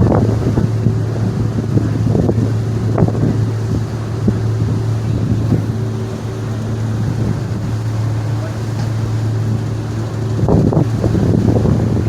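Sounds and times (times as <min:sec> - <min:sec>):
ferry engines droning: 0:00.0 - 0:12.0
wind on microphone: 0:00.0 - 0:12.0.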